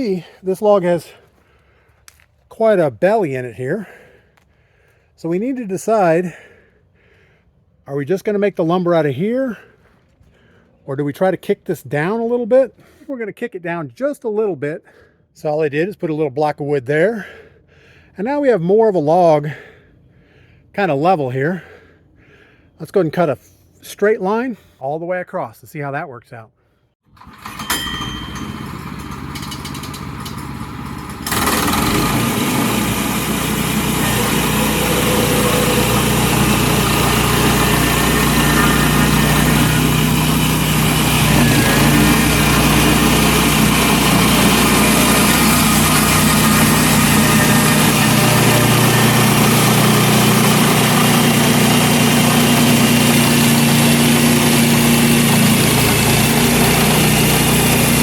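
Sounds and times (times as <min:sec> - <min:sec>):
sawmill gas engine throttling up: 0:00.0 - 0:01.9, 0:02.5 - 0:09.8, 0:27.0 - 0:58.0
band blade cutting log: 0:31.2 - 0:58.0.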